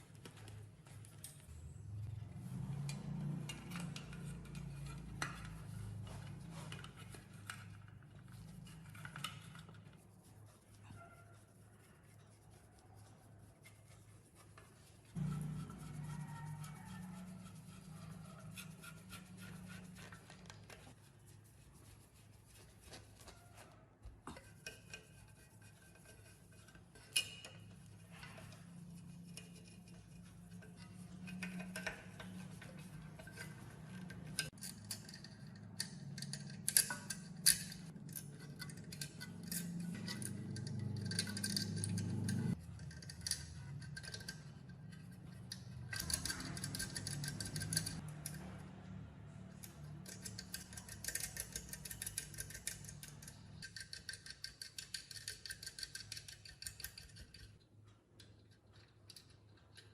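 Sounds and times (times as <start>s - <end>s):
metal tools clinking and tapping: 26.0s - 59.9s.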